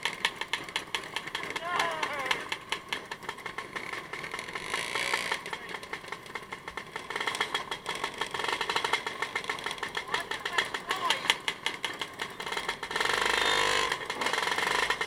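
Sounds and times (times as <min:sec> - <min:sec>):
motorcycle engine running: 0:00.0 - 0:15.0
rattling clatter: 0:00.0 - 0:15.0.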